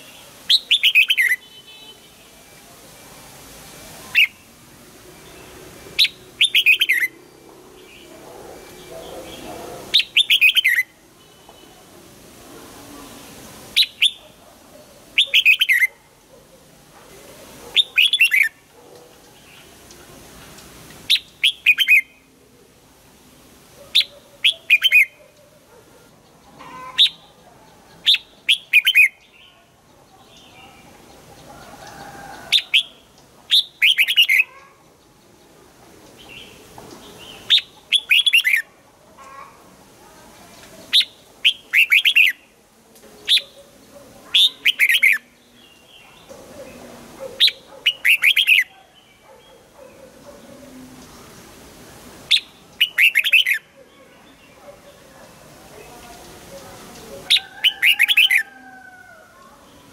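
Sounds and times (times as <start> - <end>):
bird singing whistled phrases: 0.5 - 1.4, 33.5 - 34.4, 52.3 - 53.6.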